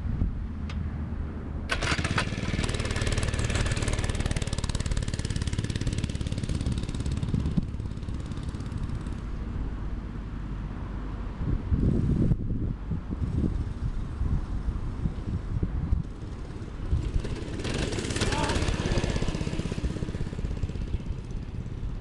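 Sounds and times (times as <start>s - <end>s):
mini bike engine running: 1.7s - 9.3s, 13.2s - 22.0s.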